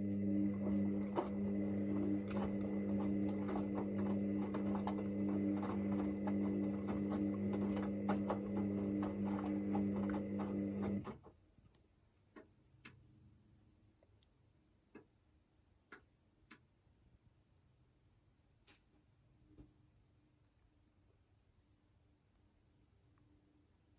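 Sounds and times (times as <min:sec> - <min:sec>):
washing machine motor hum: 0:00.0 - 0:11.3.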